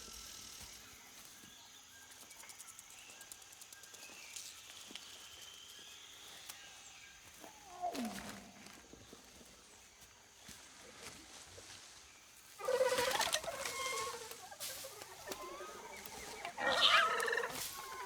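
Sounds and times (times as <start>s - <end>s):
high insect drone: 0.0s - 6.4s
insect chirps: 0.0s - 18.0s
held high animal call: 15.2s - 18.0s.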